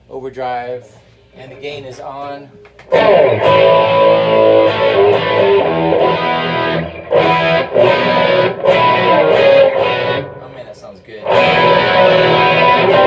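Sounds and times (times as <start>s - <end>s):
distorted electric guitar chords: 2.9s - 10.6s, 11.2s - 13.0s.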